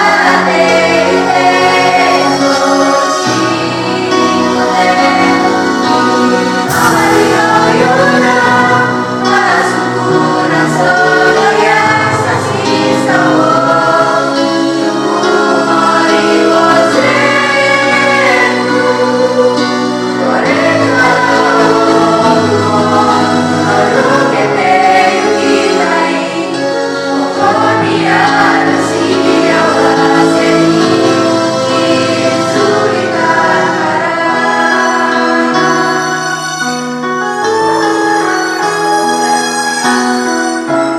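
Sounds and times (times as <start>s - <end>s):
vocal group singing in unison: 0.0s - 38.2s
low accompaniment: 0.3s - 26.5s.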